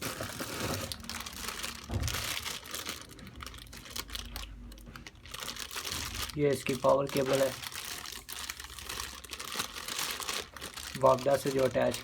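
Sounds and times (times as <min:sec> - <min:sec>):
plastic packaging crinkling: 0:00.0 - 0:12.0
low thump: 0:01.9 - 0:02.4.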